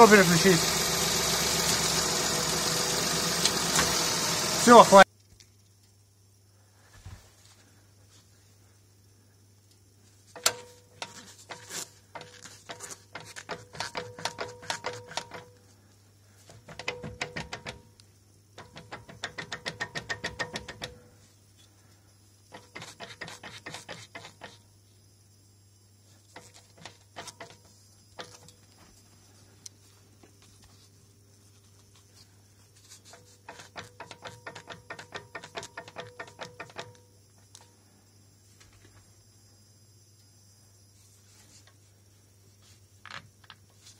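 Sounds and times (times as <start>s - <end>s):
drive shaft rapid clicking: 0.0s - 5.0s.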